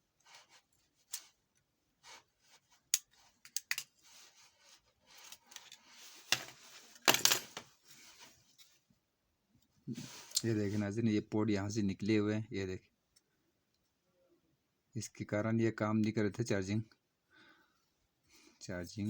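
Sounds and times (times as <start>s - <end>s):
phone parts clicking and scraping: 2.9s - 4.0s, 5.1s - 7.6s.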